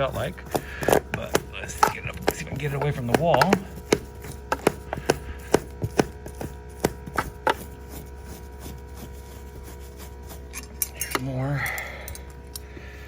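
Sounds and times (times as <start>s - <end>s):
steady hum: 0.0s - 13.0s
scraper taps and clicks: 0.4s - 7.6s.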